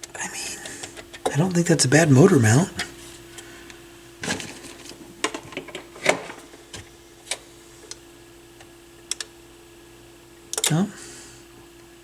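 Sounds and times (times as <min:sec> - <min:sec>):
faint steady hum: 0:00.0 - 0:12.0
turntable parts clicking: 0:08.6 - 0:09.4.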